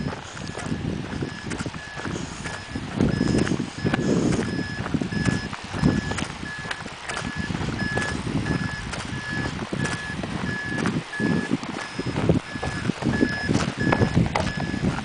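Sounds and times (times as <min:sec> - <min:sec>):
electronic alarm beeping: 0:00.0 - 0:14.9
low rumbling: 0:00.0 - 0:15.0
scattered clicks: 0:05.2 - 0:09.2.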